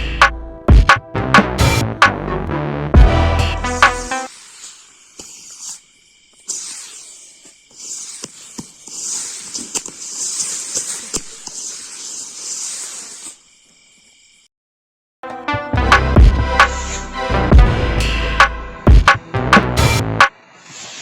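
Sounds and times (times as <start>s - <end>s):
firework rockets fizzing: 3.6s - 13.9s, 20.5s - 21.0s
firework pops and cracks: 4.6s - 5.8s, 6.4s - 13.4s.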